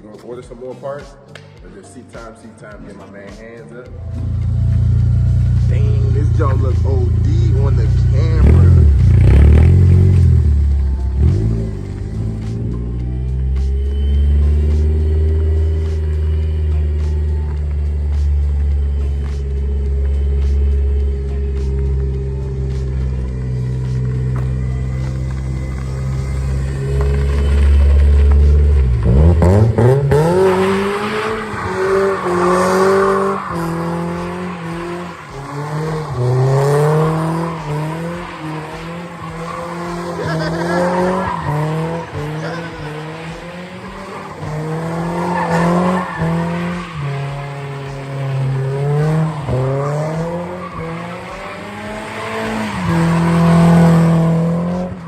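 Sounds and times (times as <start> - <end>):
car engine revving hard: 5.2 - 12.9, 25.7 - 55.0
tyres squealing: 13.7 - 54.0.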